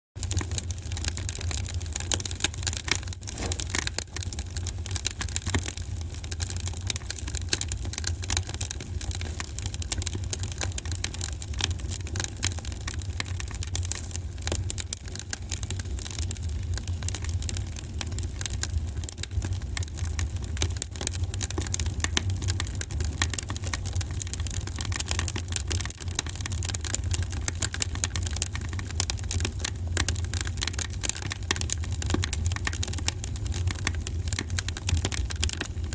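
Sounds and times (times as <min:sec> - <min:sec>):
low rumble of flames: 0:00.2 - 0:35.9
wood fire crackling and popping: 0:00.2 - 0:35.9.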